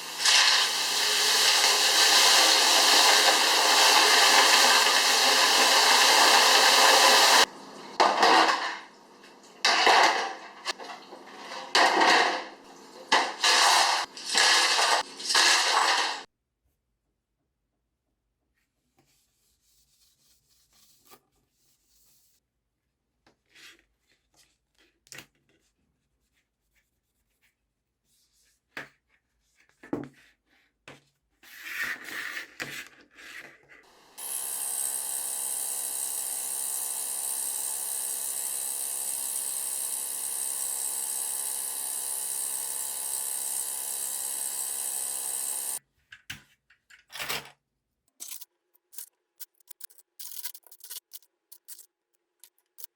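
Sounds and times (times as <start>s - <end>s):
electric motor running: 0.0s - 7.5s, 33.9s - 45.8s
keyboard parts being handled: 46.0s - 52.9s.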